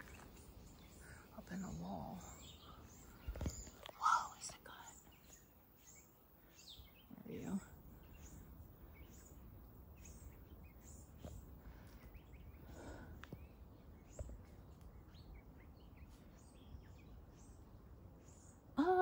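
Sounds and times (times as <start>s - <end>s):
faint bird chirps: 0.0s - 19.0s.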